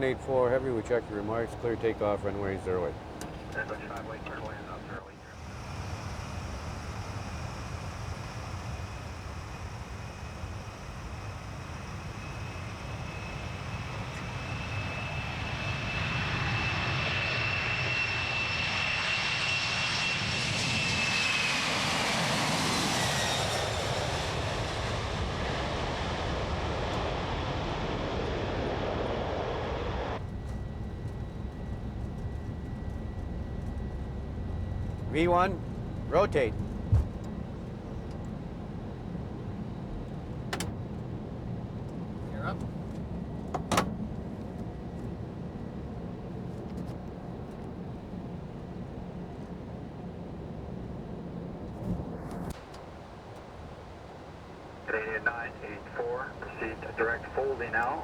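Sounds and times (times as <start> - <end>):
high engine whine: 0.0 - 42.0, 54.2 - 58.0
jet engines rumbling: 0.0 - 58.0.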